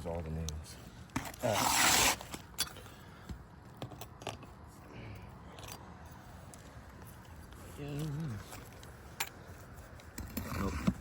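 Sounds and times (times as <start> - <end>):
tool scraping under shingle: 1.2 - 2.7, 9.6 - 11.0.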